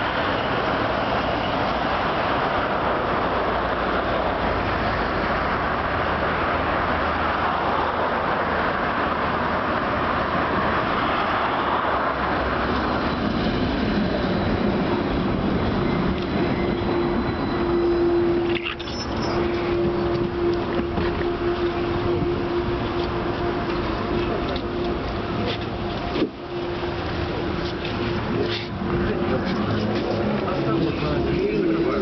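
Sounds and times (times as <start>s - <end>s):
tram wheels rolling on rails: 0.0s - 32.0s
steady tone: 13.4s - 32.0s.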